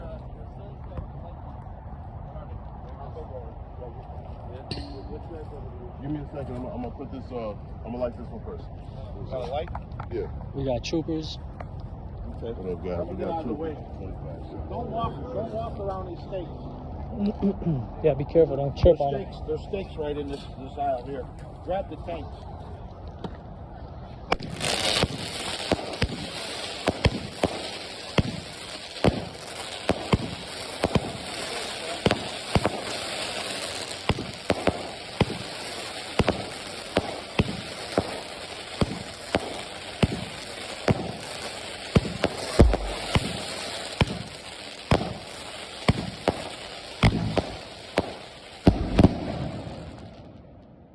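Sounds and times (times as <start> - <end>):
firework spraying hiss: 24.3 - 50.1
firework sharp pops: 24.3 - 50.4.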